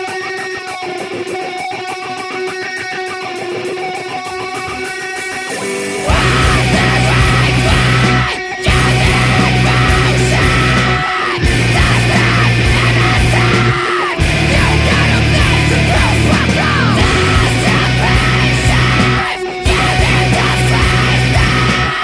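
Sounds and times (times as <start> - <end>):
distorted guitars: 0.0 - 22.0
drums: 0.0 - 22.0
bass guitar: 4.0 - 22.0
shouted vocals: 6.0 - 22.0.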